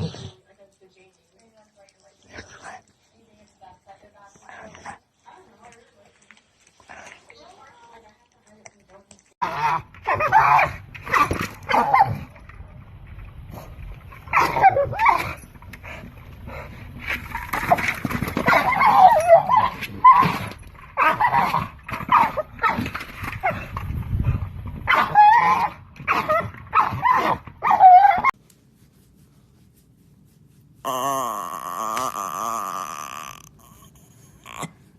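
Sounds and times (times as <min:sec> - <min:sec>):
dog whining and yipping: 0:09.5 - 0:12.3, 0:14.3 - 0:16.6, 0:18.4 - 0:23.6, 0:24.9 - 0:28.4.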